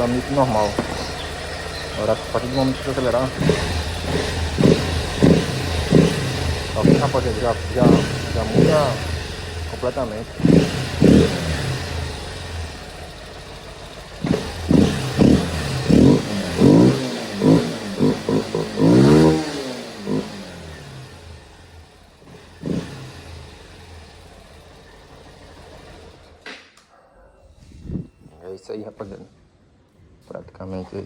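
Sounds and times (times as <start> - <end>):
motorcycle engine revving: 0.0 - 26.5.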